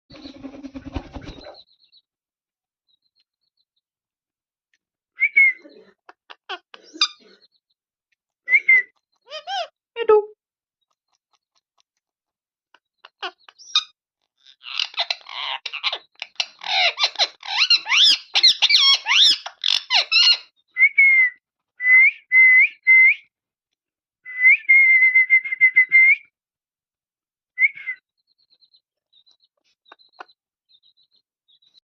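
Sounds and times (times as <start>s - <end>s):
parrot chattering: 14.6s - 20.4s.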